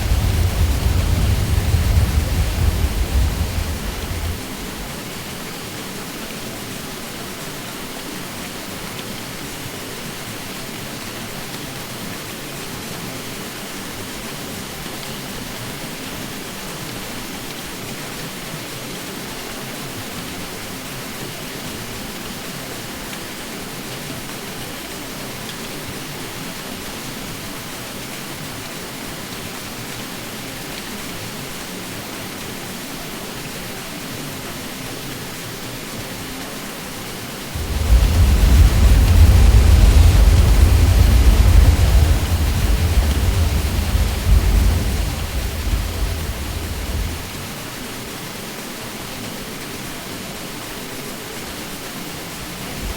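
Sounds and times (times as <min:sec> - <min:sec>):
ceiling fan running: 0:00.0 - 0:05.0, 0:37.6 - 0:47.5.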